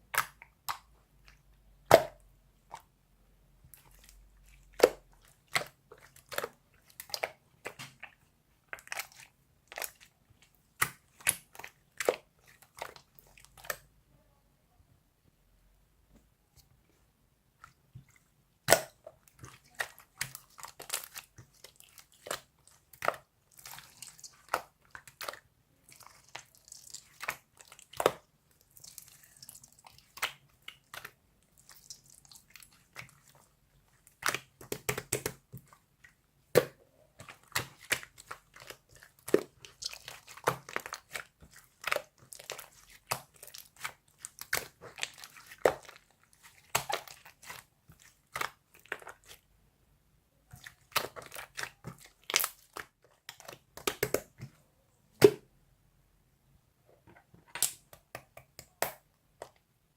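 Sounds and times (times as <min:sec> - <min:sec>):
slime squished by hand: 0:03.7 - 0:13.9, 0:17.7 - 0:49.5, 0:50.5 - 0:54.6.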